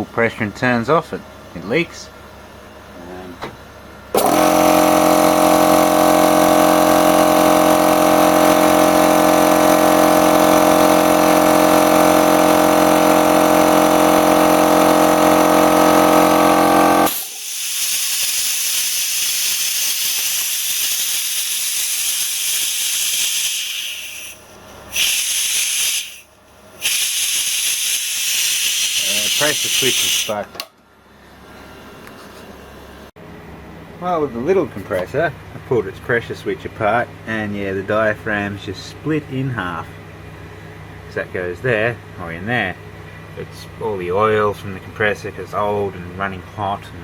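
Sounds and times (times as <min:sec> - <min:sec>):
air compressor running: 0:03.0 - 0:33.2
air hissing from pressure switch: 0:17.0 - 0:30.4.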